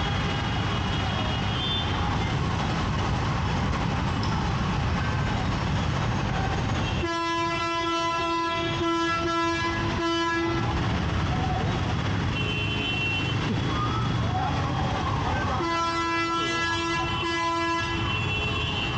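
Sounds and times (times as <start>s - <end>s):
traffic and road noise: 0.0s - 18.9s
horn steady note: 15.6s - 18.9s.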